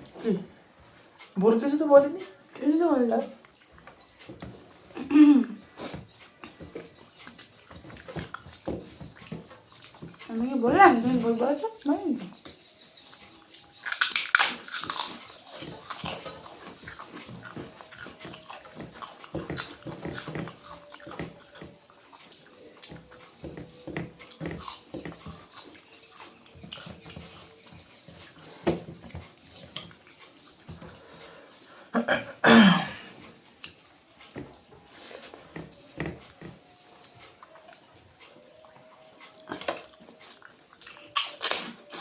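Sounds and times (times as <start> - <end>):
chewing and mouth sounds: 2.2 - 31.8, 33.0 - 42.0
small crunches: 13.5 - 21.6.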